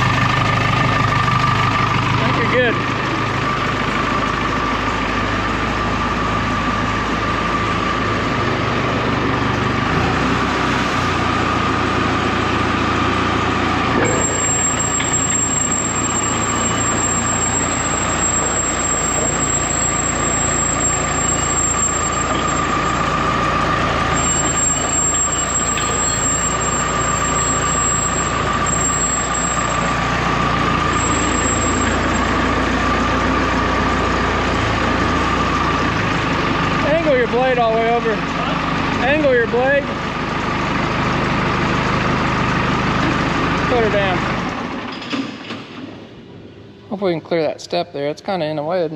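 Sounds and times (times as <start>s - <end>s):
diesel engine running: 0.0s - 47.2s
steady whine: 11.6s - 33.3s.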